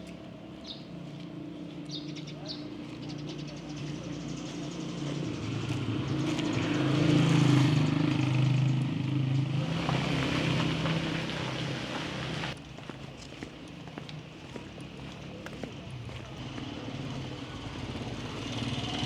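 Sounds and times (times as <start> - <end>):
vehicle engine passing by: 2.6 - 12.6, 15.1 - 19.0.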